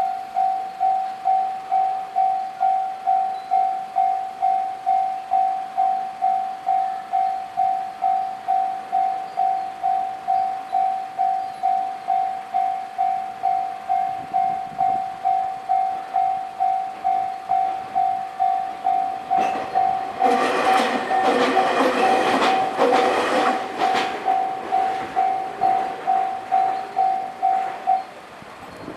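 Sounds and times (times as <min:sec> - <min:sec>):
level crossing warning bell: 0:00.0 - 0:28.9
train wheels clattering over rail joints: 0:16.9 - 0:28.9.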